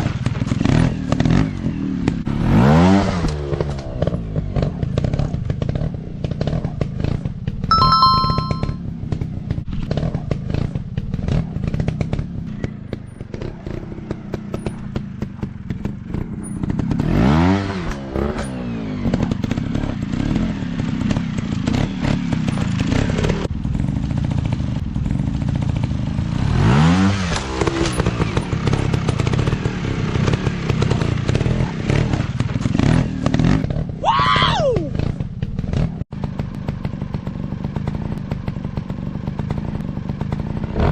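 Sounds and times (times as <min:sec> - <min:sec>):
short falling high tone: 0:07.7 - 0:08.8.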